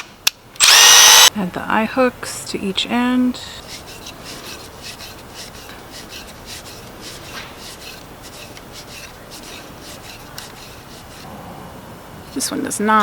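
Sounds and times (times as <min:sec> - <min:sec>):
screw eye creaking into wood: 0:00.6 - 0:01.3.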